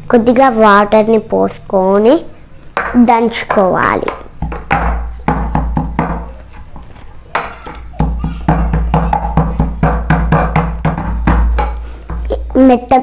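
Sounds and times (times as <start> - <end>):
stick pounding paste in glass: 2.8 - 12.3.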